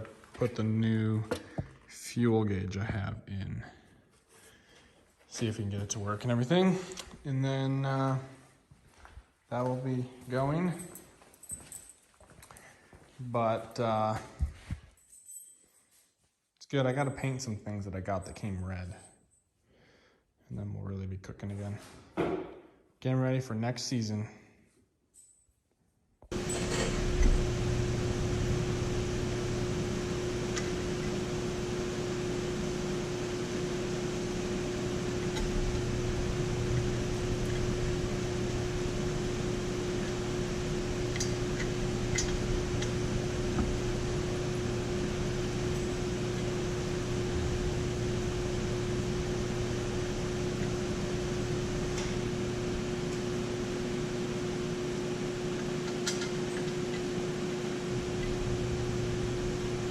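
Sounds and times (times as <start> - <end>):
steady mechanical hum: 26.3 - 59.9.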